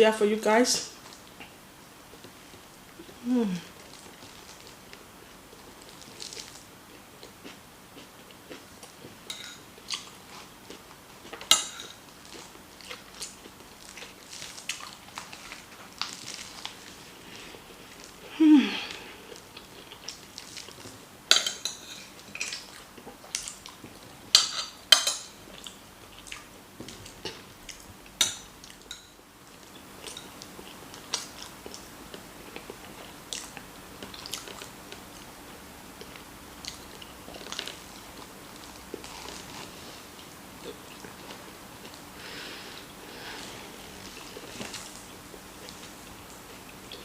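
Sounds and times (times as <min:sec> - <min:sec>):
chewing: 0:01.0 - 0:18.3, 0:18.9 - 0:27.9, 0:28.6 - 0:35.0, 0:36.0 - 0:42.0
cutlery clinking on a plate: 0:09.3 - 0:09.6, 0:21.3 - 0:22.5, 0:24.3 - 0:25.4.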